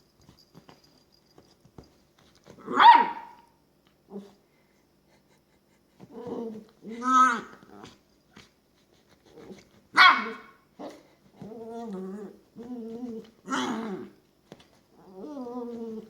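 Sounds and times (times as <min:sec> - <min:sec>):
puppy yipping: 0:02.7 - 0:03.5
puppy growly grumbles: 0:06.0 - 0:08.0, 0:10.8 - 0:14.2, 0:15.0 - 0:16.0.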